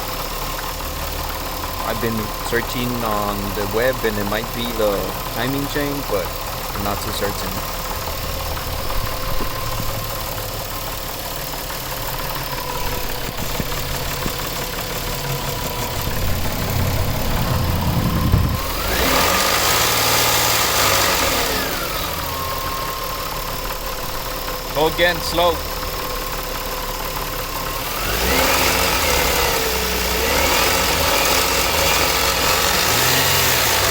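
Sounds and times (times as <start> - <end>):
car engine idling with knock: 0.0 - 33.9
engine revving: 1.0 - 33.9.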